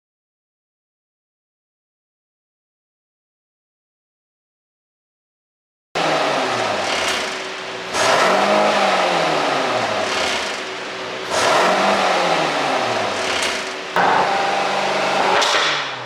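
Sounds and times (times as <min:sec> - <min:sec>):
car exhaust revving: 0:06.0 - 0:16.0
exhaust crackles: 0:06.0 - 0:16.0.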